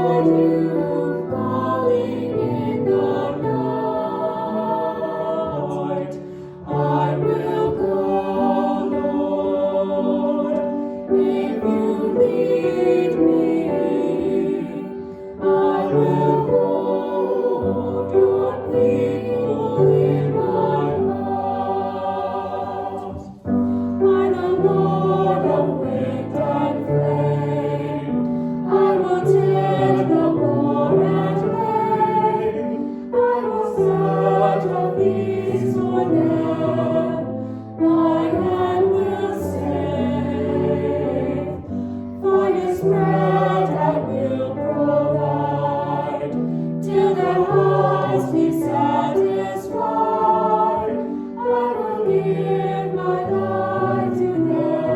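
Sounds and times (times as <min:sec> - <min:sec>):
choir singing a hymn: 0:00.0 - 0:54.9
singers breathing: 0:06.2 - 0:06.6, 0:23.3 - 0:24.0, 0:37.4 - 0:37.8, 0:41.7 - 0:42.2.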